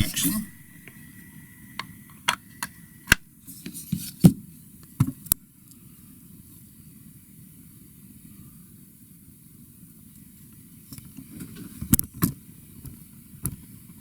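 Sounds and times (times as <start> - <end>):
low steady hum: 0.0 - 6.4.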